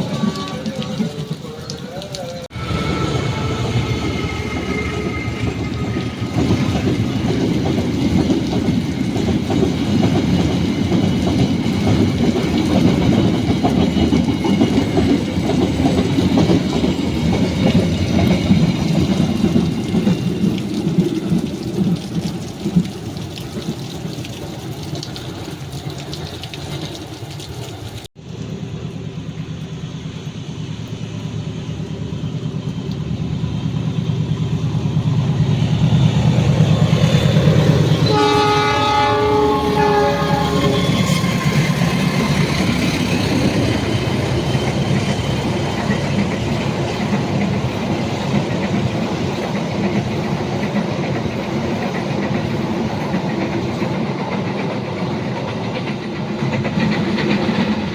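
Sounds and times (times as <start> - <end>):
diesel train passing on rails: 0.0 - 57.9
locomotive horn blast: 38.0 - 41.4.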